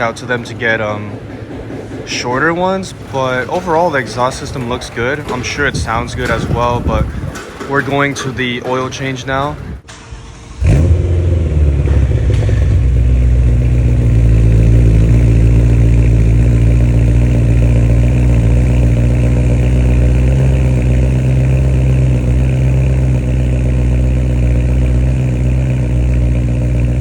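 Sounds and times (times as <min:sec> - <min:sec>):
car engine idling: 0:00.0 - 0:27.0.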